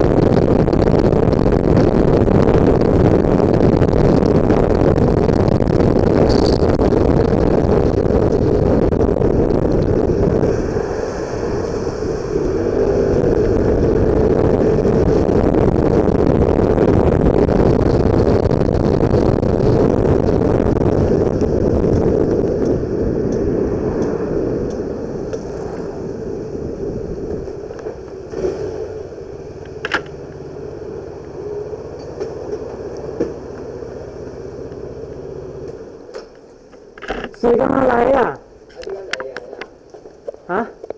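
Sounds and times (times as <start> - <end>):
car engine and road rumble: 0.0 - 40.9.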